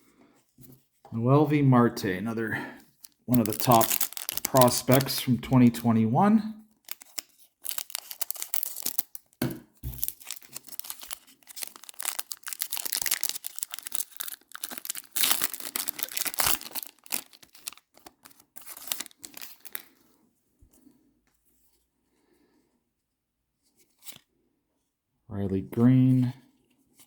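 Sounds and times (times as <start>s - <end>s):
wrapper crinkling and tearing: 2.9s - 6.0s, 6.7s - 20.0s.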